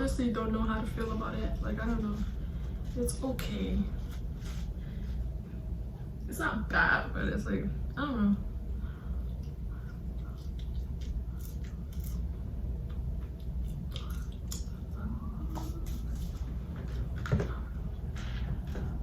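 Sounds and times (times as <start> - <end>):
steady low hum: 0.0 - 19.0
person chewing with wet smacks: 9.1 - 17.7.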